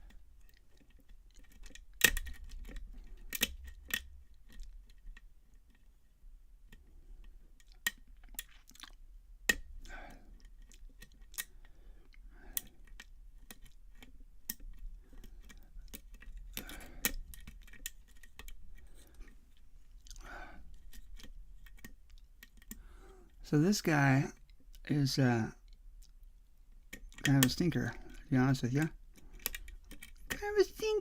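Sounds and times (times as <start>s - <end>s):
lock pick metallic clicks: 0.1s - 5.2s, 12.6s - 19.1s, 29.1s - 30.4s.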